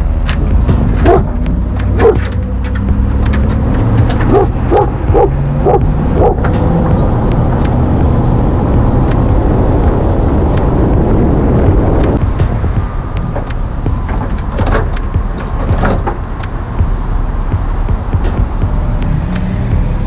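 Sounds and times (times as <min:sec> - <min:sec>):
vehicle engine rumbling: 0:00.0 - 0:20.0
dog barking: 0:01.0 - 0:01.3, 0:02.0 - 0:02.2, 0:04.3 - 0:06.4.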